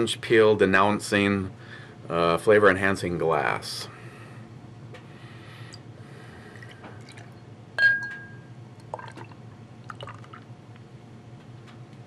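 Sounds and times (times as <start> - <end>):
trickling liquid: 6.5 - 7.4, 8.8 - 10.5
beer pouring into a glass: 6.5 - 8.2, 8.8 - 10.5
glass clinks: 7.8 - 8.5
sharp ringing glass clink: 7.8 - 8.5.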